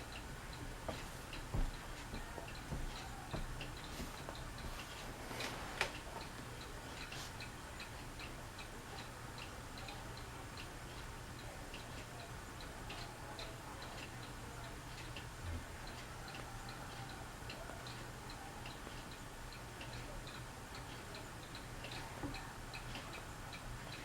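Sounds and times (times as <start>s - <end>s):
ceiling fan humming: 0.0s - 24.0s
fan ticking: 0.0s - 24.0s
soft low knock: 0.9s - 4.3s.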